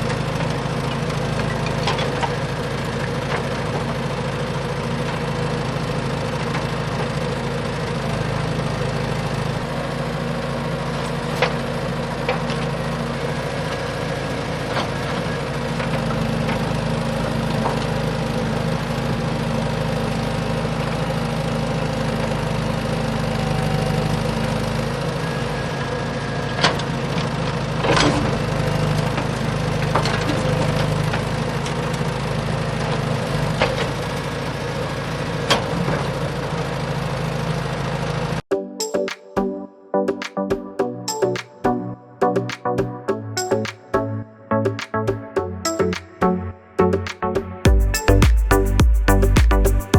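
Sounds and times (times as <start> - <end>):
small motor running: 0.0 - 38.4.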